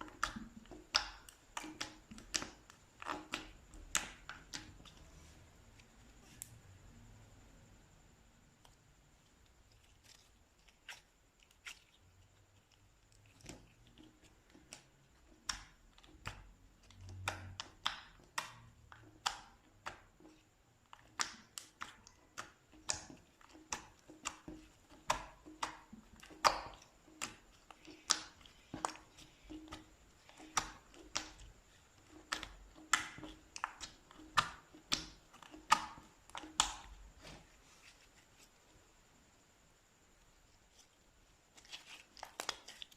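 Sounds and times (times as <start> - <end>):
slime popping under hands: 15.4 - 37.3.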